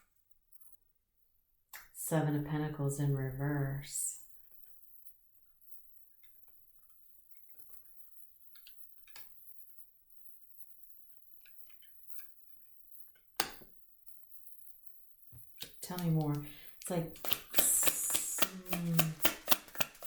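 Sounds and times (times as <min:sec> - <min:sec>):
card snap: 0:15.6 - 0:20.0
cards tapping and clicking: 0:15.6 - 0:20.0.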